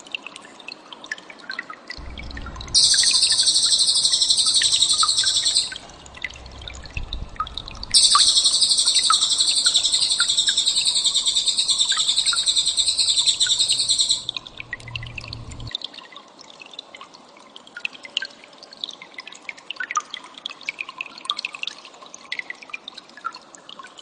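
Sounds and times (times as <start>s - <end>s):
bird singing fast high trill: 2.0s - 15.7s
faint bird chirps: 2.0s - 15.7s.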